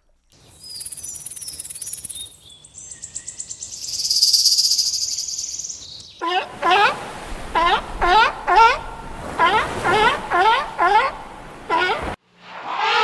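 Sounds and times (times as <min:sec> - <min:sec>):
bird chirps: 0:00.4 - 0:06.2
insects trilling: 0:00.4 - 0:06.2
animal calls sweeping in pitch: 0:11.7 - 0:13.0.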